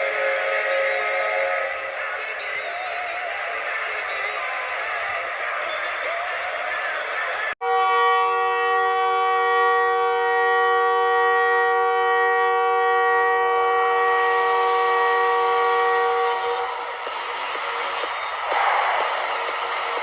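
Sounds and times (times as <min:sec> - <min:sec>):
goal horn blast: 0:07.6 - 0:16.8
crowd noise: 0:17.1 - 0:20.0.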